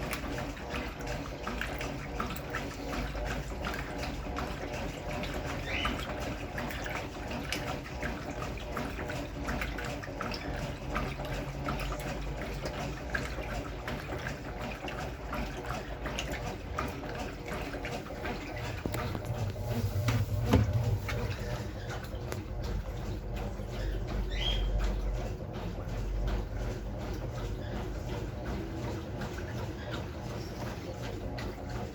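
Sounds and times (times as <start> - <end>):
water splashing into drum: 0.0 - 31.9
low hum: 18.7 - 22.6.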